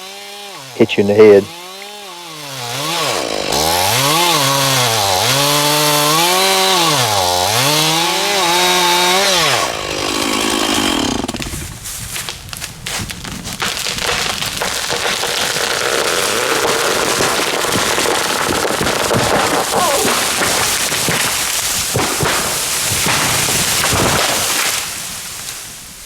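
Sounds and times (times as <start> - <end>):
tree wood cracking and snapping: 1.5 - 25.7
limbs crashing through canopy: 14.0 - 25.0.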